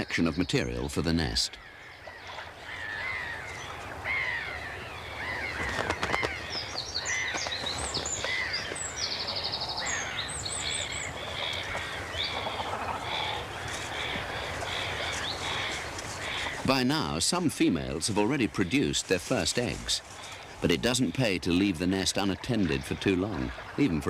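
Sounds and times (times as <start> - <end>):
birds calling: 0.0 - 24.0
higher bird chirps: 1.5 - 16.7.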